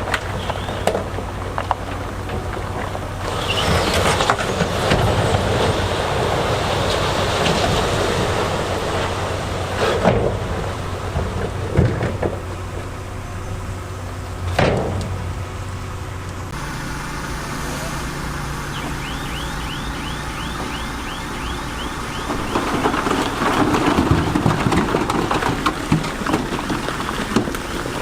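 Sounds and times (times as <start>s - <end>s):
stones rumbling and grinding: 0.0s - 13.1s, 20.6s - 28.0s
diesel heavy equipment running: 0.0s - 28.0s.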